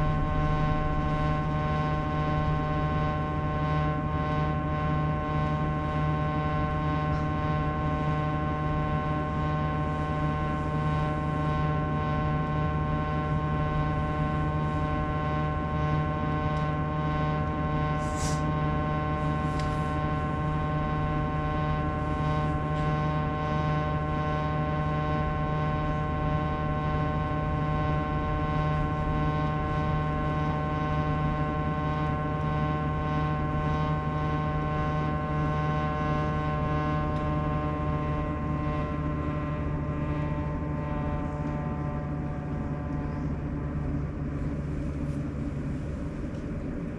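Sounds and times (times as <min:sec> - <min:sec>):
air conditioner droning hum: 0:00.0 - 0:46.9
brief hiss: 0:18.0 - 0:18.5.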